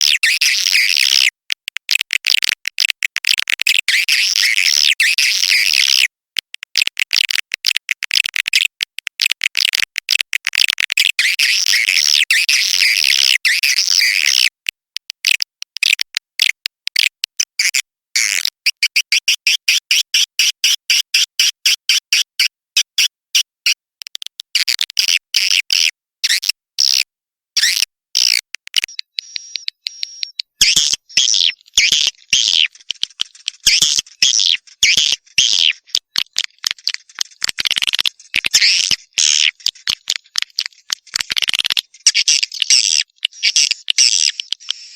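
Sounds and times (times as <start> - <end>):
sharp bird chirps: 28.9 - 36.0.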